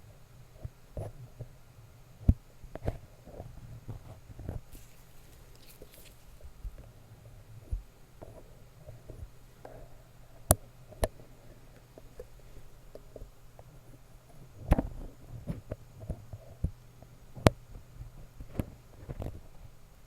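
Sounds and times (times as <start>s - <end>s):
low steady hum: 0.0s - 20.0s
soft rubbing and clicks: 2.7s - 6.9s.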